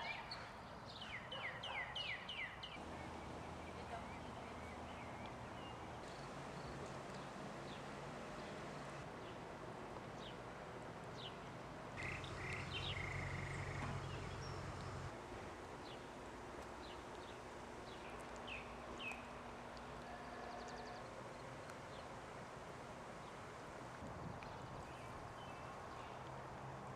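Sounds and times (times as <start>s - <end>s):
small birds chirping: 12.0s - 15.1s, 16.8s - 22.1s.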